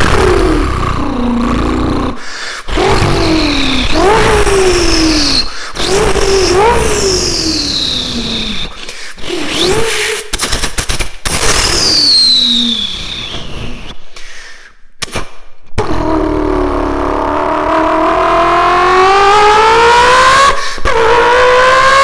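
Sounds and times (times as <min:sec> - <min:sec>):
engine crackle: 0:00.0 - 0:08.8
car engine accelerating: 0:00.0 - 0:10.0, 0:15.8 - 0:22.0
turbo whistle: 0:02.8 - 0:10.3, 0:11.4 - 0:14.0.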